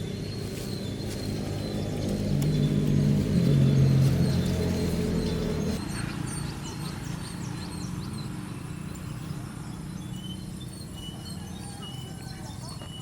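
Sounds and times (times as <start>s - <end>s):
steady low rumble: 0.0s - 5.9s
small birds chirping: 0.0s - 13.0s.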